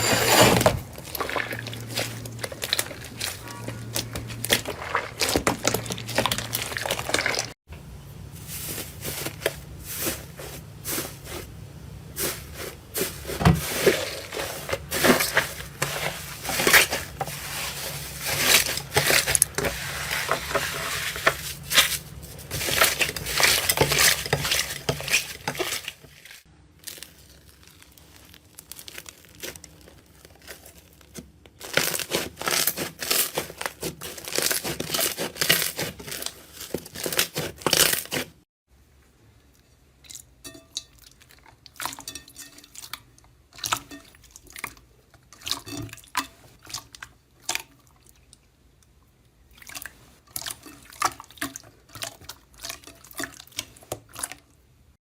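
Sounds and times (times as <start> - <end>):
slime crackling and popping: 26.8 - 38.2.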